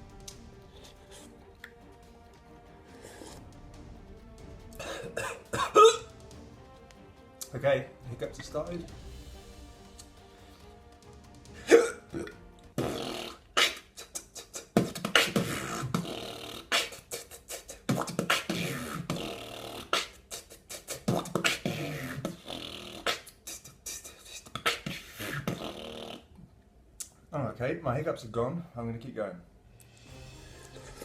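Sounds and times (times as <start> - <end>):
person beatboxing: 12.8 - 26.2.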